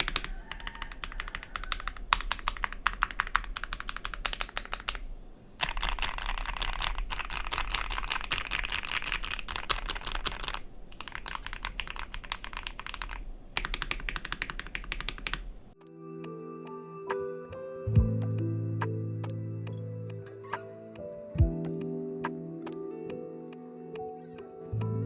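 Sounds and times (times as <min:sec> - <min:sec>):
mechanical keyboard typing: 0:00.0 - 0:15.8.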